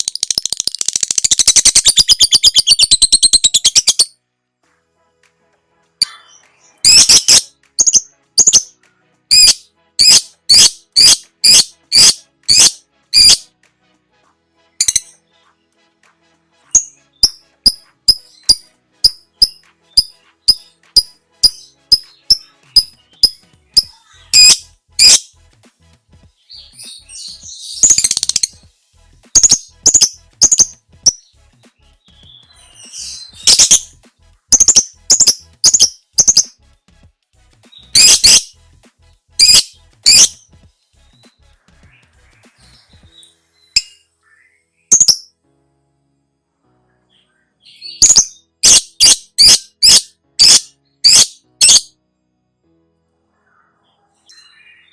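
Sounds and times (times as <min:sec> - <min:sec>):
bird chattering: 0:09.3 - 0:13.4, 0:23.2 - 0:25.2.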